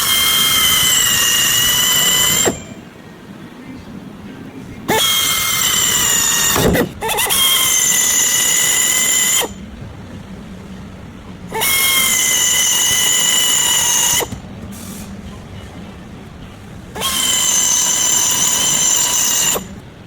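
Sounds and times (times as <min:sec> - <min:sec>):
power tool high-pitched whine: 0:00.0 - 0:02.8, 0:04.9 - 0:09.6, 0:11.5 - 0:15.0, 0:16.9 - 0:19.8
hiss: 0:11.6 - 0:15.3.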